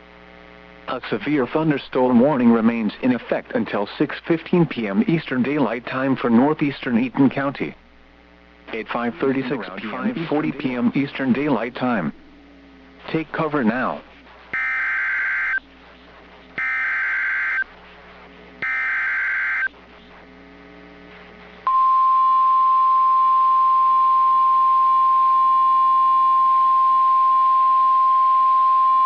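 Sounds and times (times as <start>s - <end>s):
raspy data tone bursts: 14.5s - 15.6s, 16.6s - 17.7s, 18.6s - 19.7s
steady warning alarm tone: 14.5s - 15.6s, 16.6s - 17.7s, 18.6s - 19.7s.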